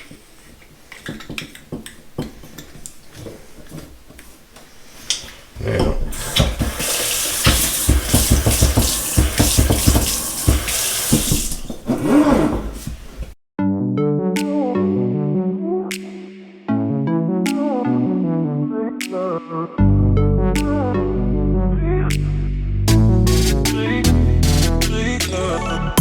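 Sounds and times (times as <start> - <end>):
water running from faucet: 6.1 - 12.0
deep bass: 19.8 - 26.0
electronic music: 19.8 - 26.0.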